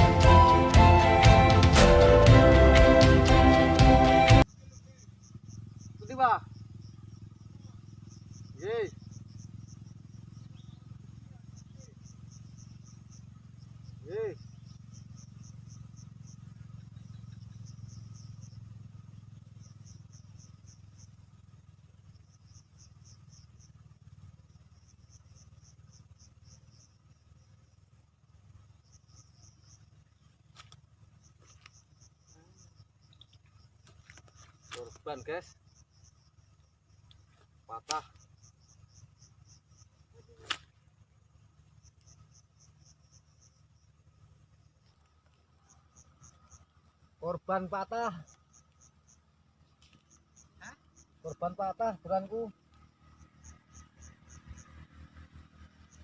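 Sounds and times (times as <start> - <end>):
insects chirping: 0.0 - 56.0
low steady rumble: 0.0 - 56.0
sharp click: 37.8 - 38.3, 40.4 - 40.8.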